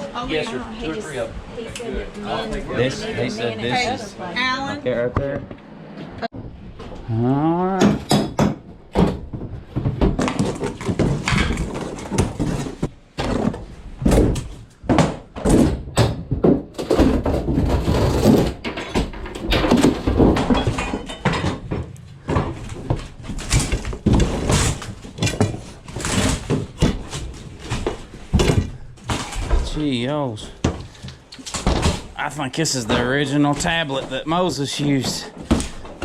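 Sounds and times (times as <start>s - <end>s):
thuds and clatter of debris: 7.8s - 29.9s, 30.5s - 32.2s, 34.8s - 36.0s.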